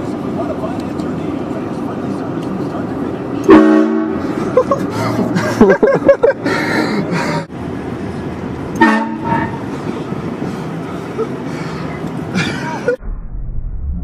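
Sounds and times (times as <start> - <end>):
train horn blast: 3.4 - 4.2, 8.8 - 9.7.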